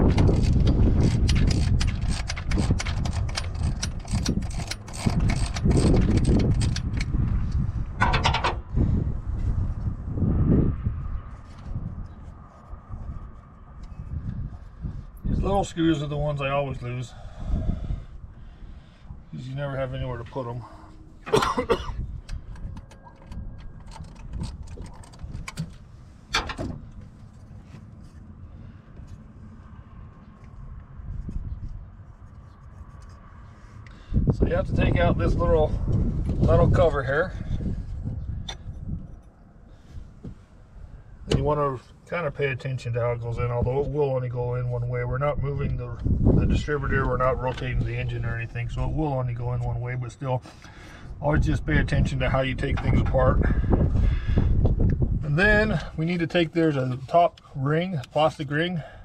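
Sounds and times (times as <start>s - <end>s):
continuous low rumble: 0.0s - 59.0s
hand tools clicking on metal: 0.1s - 7.1s.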